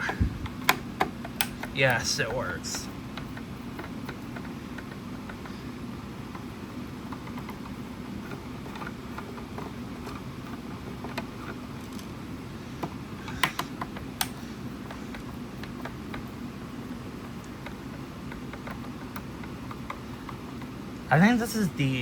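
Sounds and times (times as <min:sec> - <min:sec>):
screwdriver clicking on plastic: 0:00.0 - 0:02.5, 0:03.1 - 0:05.5, 0:07.1 - 0:12.1, 0:12.8 - 0:16.4, 0:17.2 - 0:20.8
low background hum: 0:00.0 - 0:22.0.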